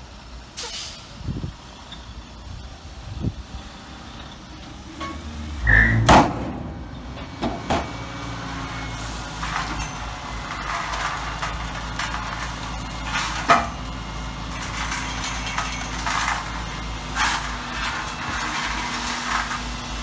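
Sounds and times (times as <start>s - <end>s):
diesel machinery engine running: 0.0s - 20.0s
loud metal clanks and knocks: 4.9s - 20.0s.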